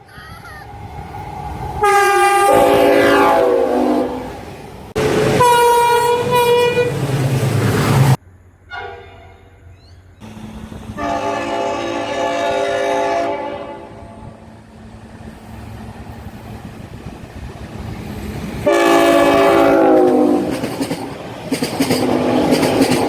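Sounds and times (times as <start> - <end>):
train passing: 0.0 - 23.0
locomotive air horn: 1.8 - 4.4, 5.0 - 7.0, 8.7 - 9.6, 11.0 - 14.4, 18.6 - 20.6
wheels clicking on rails: 20.0 - 23.0.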